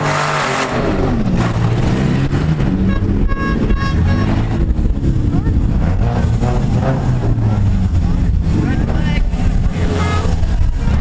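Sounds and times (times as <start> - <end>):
car engines revving: 0.0 - 11.0
horn short beeps: 2.8 - 4.6.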